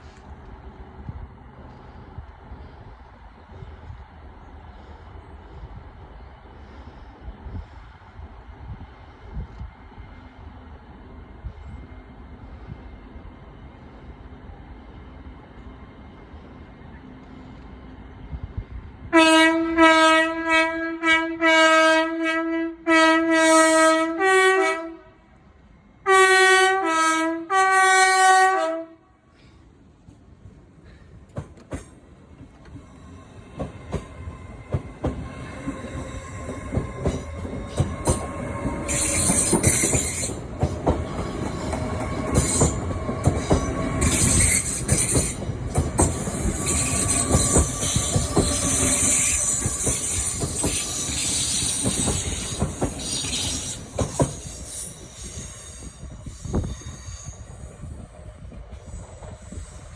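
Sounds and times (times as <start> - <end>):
train horn short blasts: 19.1 - 25.2, 26.0 - 29.2
train wheels clacking: 31.2 - 57.2
train wheels squealing: 32.6 - 59.9.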